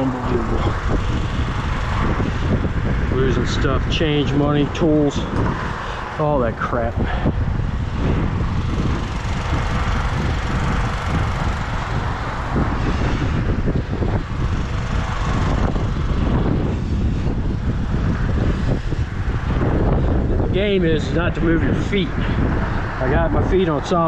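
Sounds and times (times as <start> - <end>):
road traffic: 0.0 - 24.0
wind buffeting microphone: 0.0 - 24.0.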